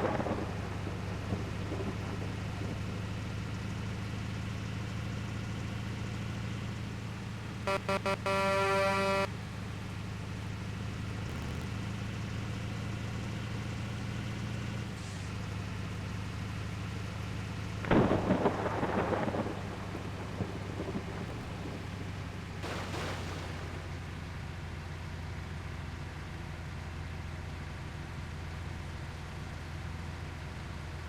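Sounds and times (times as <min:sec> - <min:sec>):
rough rattling rumble: 0:00.0 - 0:08.2, 0:17.8 - 0:24.2
truck engine droning: 0:00.0 - 0:31.0
multi-tone truck horn: 0:07.6 - 0:09.6.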